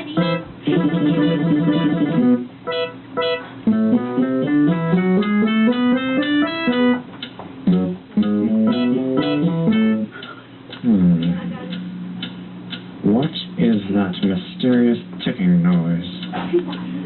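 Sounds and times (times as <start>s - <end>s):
climbing bass line: 0.0s - 2.9s, 3.7s - 7.0s, 7.6s - 10.2s, 10.8s - 13.8s
picked guitar notes: 0.0s - 16.7s
strummed guitar chords: 0.0s - 17.0s.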